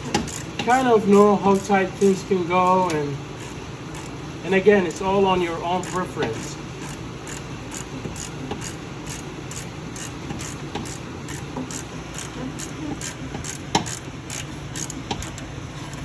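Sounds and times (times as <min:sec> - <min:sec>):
socket ratchet clicking: 0:00.0 - 0:01.8, 0:02.6 - 0:04.2, 0:05.8 - 0:16.0.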